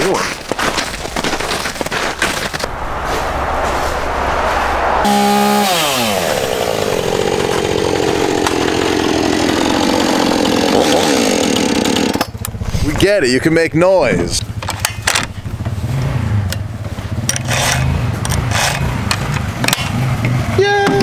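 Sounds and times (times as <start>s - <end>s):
chainsaw running: 5.1s - 13.0s.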